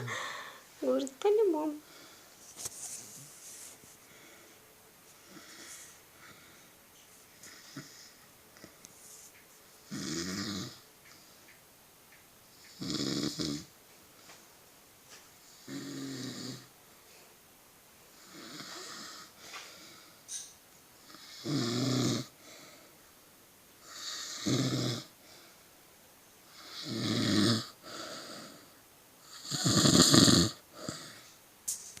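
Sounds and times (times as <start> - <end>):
soft breaths: 0.0 - 1.0, 1.8 - 9.8, 18.1 - 20.4, 22.3 - 23.2, 25.1 - 25.9
man snoring: 9.8 - 10.8, 12.7 - 13.7, 15.6 - 16.7, 18.2 - 19.3, 21.1 - 22.4, 23.8 - 25.1, 26.5 - 28.7, 29.3 - 31.2.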